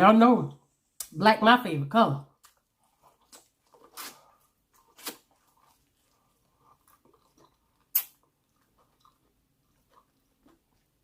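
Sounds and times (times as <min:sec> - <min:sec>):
wet chewing of food: 0:02.3 - 0:11.0.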